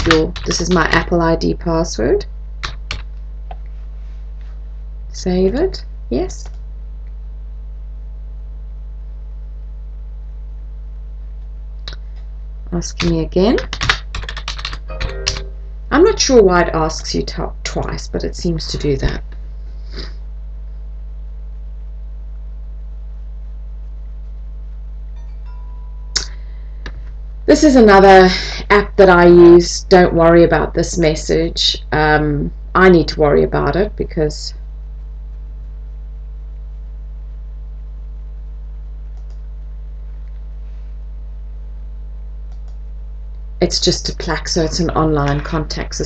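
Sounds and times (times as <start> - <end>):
low mains hum: 0.0 - 46.0.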